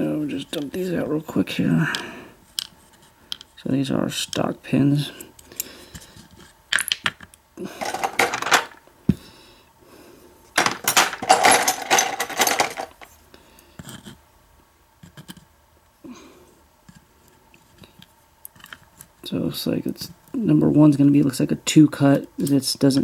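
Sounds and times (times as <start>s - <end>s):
lock pins rattling into tray: 7.7s - 8.8s, 10.6s - 13.1s.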